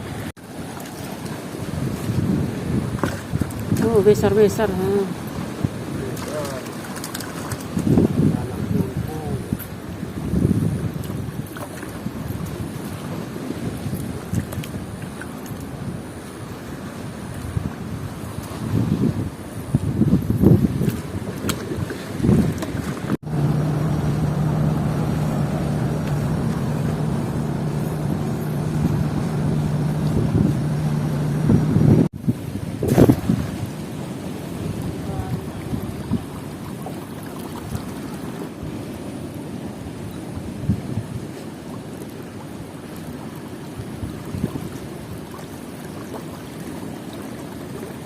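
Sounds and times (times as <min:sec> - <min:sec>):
moving water: 0:00.0 - 0:48.0
wind rumbling on microphone: 0:00.0 - 0:48.0
steady motor hum: 0:23.2 - 0:32.1
wind rushing: 0:23.2 - 0:33.8.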